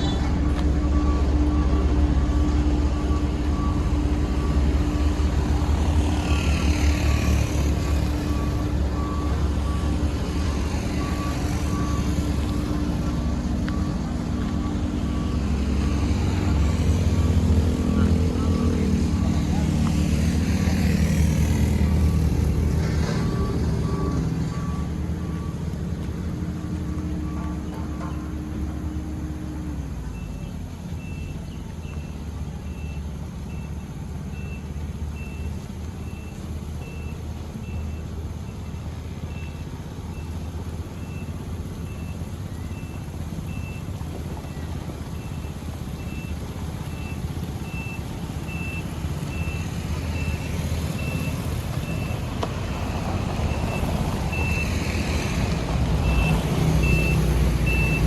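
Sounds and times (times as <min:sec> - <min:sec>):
reversing alarm beeping: 0:00.0 - 0:19.7, 0:20.7 - 0:25.7, 0:41.0 - 0:55.0, 0:56.0 - 0:58.0
diesel engine running: 0:00.0 - 0:58.0.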